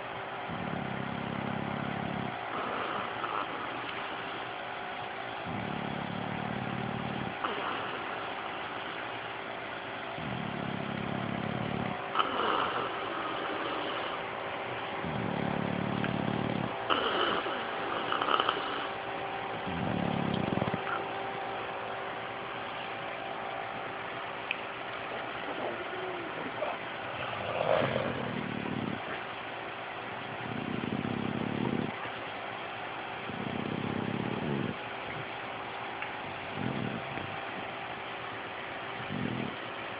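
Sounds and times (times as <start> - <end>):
dog snoring: 0.0 - 4.6, 5.2 - 9.2, 10.1 - 21.6, 25.1 - 29.3, 30.2 - 32.1, 33.2 - 35.3, 36.3 - 37.7, 38.9 - 39.8
electric fan humming: 0.0 - 39.9.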